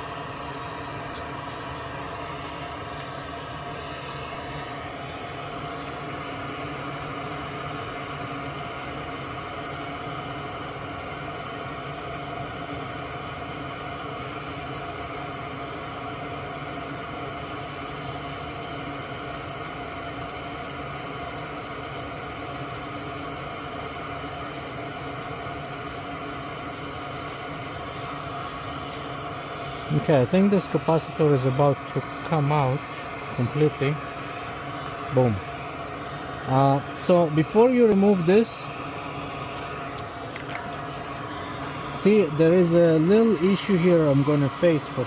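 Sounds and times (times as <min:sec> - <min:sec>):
small motor whirring hiss: 0:00.0 - 0:45.0.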